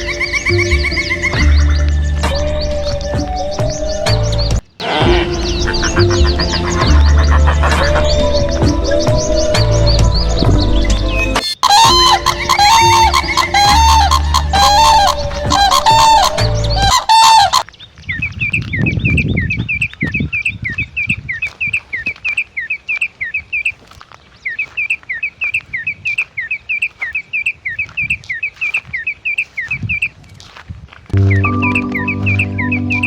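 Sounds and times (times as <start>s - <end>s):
music: 0.0s - 17.0s, 31.2s - 33.0s
bird chirping: 0.0s - 30.2s, 31.2s - 33.0s.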